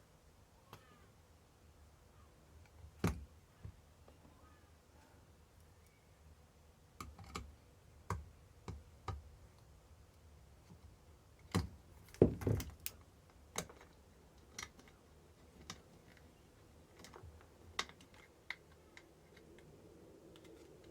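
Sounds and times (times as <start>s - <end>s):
plastic parts clicking and knocking: 7.0s - 9.3s, 11.4s - 19.7s.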